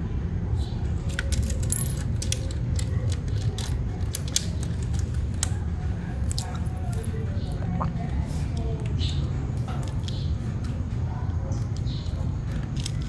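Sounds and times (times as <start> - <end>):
plastic clicks and clacks: 1.1 - 5.6.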